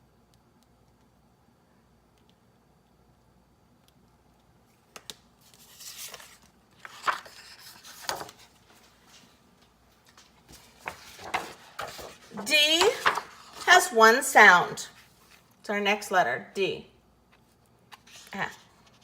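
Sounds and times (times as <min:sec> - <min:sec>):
rustling and scraping handling noises: 0:05.4 - 0:09.4, 0:10.0 - 0:13.9, 0:14.8 - 0:15.6.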